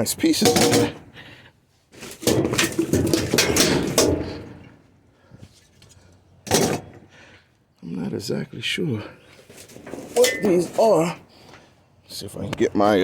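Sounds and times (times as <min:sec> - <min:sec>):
scrap clattering and knocking: 0:00.4 - 0:01.1, 0:02.0 - 0:04.8, 0:06.5 - 0:07.0, 0:09.4 - 0:11.2.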